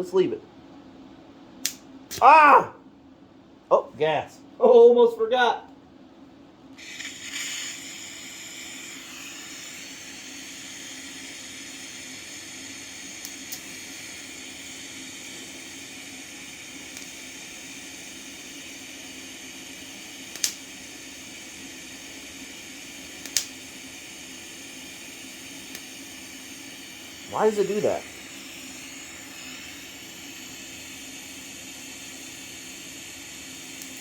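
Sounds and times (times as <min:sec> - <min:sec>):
welding arc hissing: 0:06.8 - 0:34.0
sharp clicks: 0:20.3 - 0:20.6, 0:23.2 - 0:23.5.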